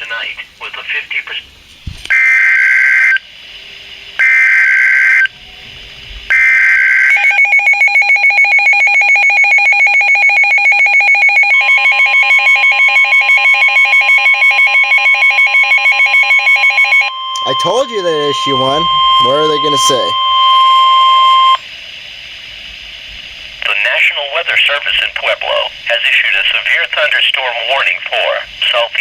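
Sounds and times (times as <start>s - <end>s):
steady warning tone: 4.2s - 21.8s
warbling data tone bursts: 10.6s - 21.7s
rapidly pulsing electronic alert tone: 14.5s - 21.6s.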